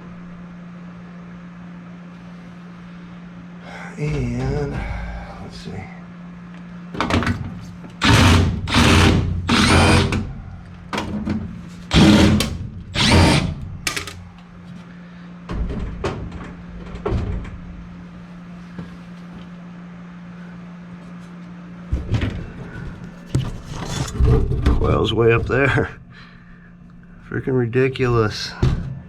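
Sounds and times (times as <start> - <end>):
steady low hum: 0.0 - 29.0
power drill running: 8.0 - 10.4, 11.9 - 14.2.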